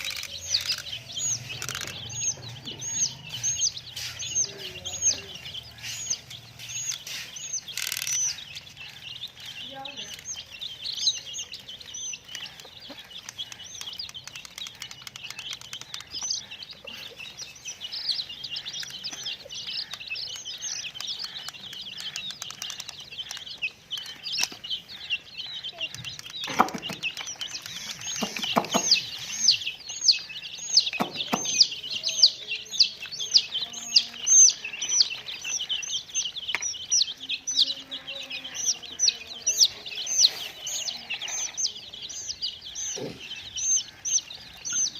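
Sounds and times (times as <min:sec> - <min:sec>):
baby chicks peeping: 0:00.0 - 0:44.9
dull knocks: 0:31.0 - 0:31.6.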